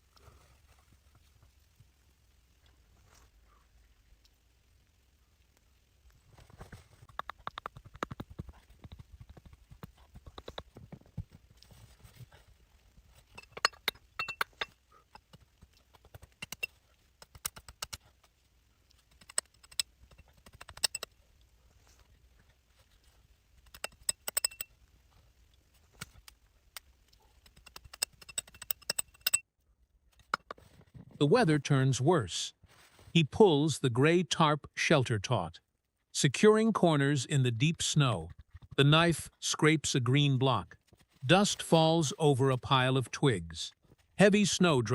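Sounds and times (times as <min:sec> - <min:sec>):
sharp clicks and knocks: 0:07.1 - 0:11.7, 0:13.3 - 0:18.0, 0:18.9 - 0:21.1, 0:23.6 - 0:24.7, 0:26.0 - 0:29.4, 0:30.1 - 0:30.7.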